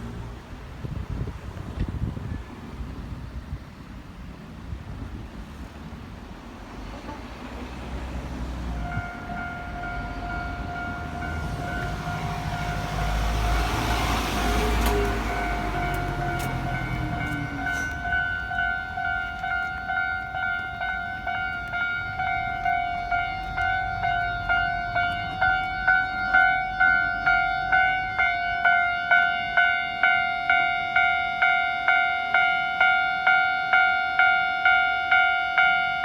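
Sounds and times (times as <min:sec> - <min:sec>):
electric train rumbling past: 0:00.0 - 0:36.0
wind buffeting microphone: 0:00.2 - 0:28.3
wheels clacking over rail joints: 0:06.6 - 0:29.4
falling train whine: 0:06.7 - 0:36.0.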